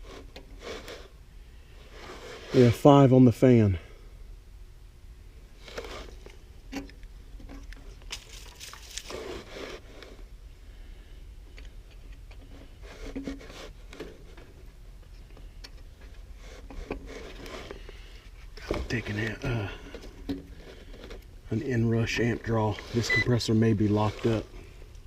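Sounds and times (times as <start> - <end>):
faint tool clicks and rustles: 11.4 - 21.3.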